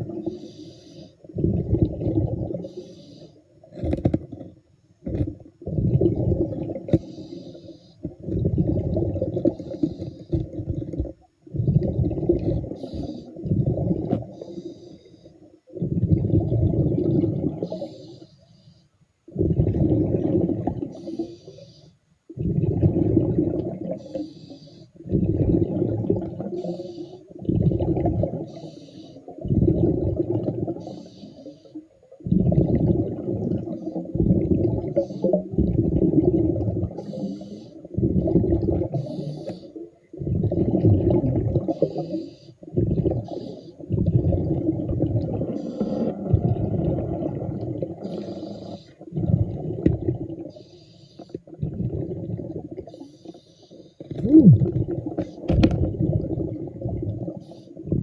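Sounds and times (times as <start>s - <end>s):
exhaled bubbles underwater: 0.0s - 14.8s, 15.4s - 18.2s, 19.3s - 21.6s, 22.3s - 58.0s
regulator inhalation hiss: 0.2s - 1.2s, 2.6s - 3.4s, 6.9s - 8.1s, 12.8s - 13.4s, 14.3s - 15.4s, 17.7s - 18.9s, 21.0s - 22.0s, 24.0s - 25.0s, 26.5s - 27.3s, 28.4s - 29.3s, 30.8s - 31.8s, 37.0s - 37.8s, 39.0s - 39.8s, 41.7s - 42.6s, 48.0s - 49.0s, 50.5s - 51.4s, 52.9s - 54.0s.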